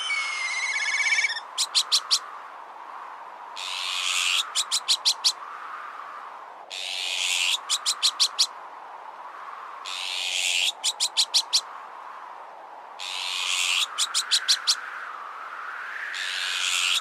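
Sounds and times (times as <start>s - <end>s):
magpie alarm calls: 0.0s - 2.2s
wind noise: 0.0s - 17.0s.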